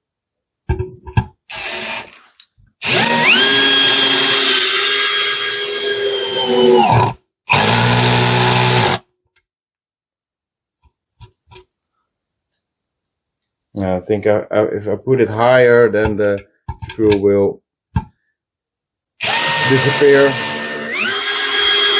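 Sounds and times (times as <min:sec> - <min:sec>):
drill motor whining: 0:01.5 - 0:02.2, 0:02.8 - 0:09.0, 0:19.2 - 0:21.9.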